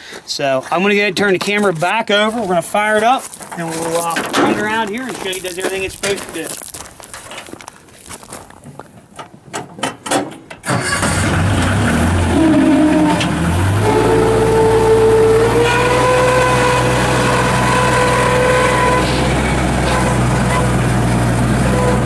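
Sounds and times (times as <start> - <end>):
diesel engine starting: 10.6 - 22.0.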